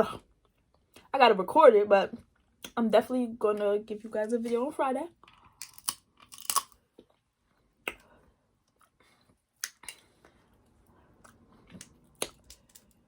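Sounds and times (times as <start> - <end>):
chewing and wet mouth sounds: 5.1 - 13.0
sharp mouth clicks: 7.8 - 8.1.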